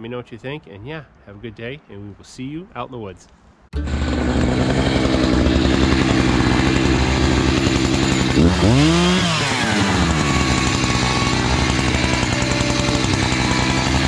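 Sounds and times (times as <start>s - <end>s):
chainsaw engine running: 3.8s - 14.0s.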